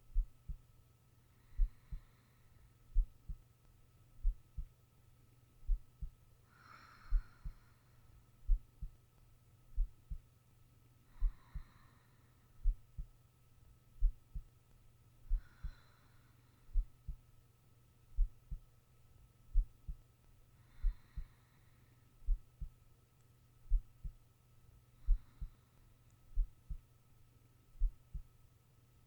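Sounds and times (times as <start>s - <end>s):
heartbeat thumps: 0.0s - 0.6s, 2.9s - 3.4s, 4.2s - 4.7s, 5.6s - 6.2s, 8.5s - 9.0s, 9.8s - 10.2s, 11.2s - 11.7s, 12.6s - 13.1s, 14.0s - 14.5s, 15.3s - 15.8s, 16.7s - 17.2s, 18.2s - 18.6s, 19.5s - 20.0s, 22.2s - 22.7s, 23.7s - 24.2s, 26.4s - 26.9s, 27.8s - 28.3s
faint steady hum: 0.0s - 29.0s
soft breaths: 0.1s - 3.6s, 5.6s - 9.1s, 11.0s - 13.2s, 14.0s - 17.5s, 19.4s - 27.0s.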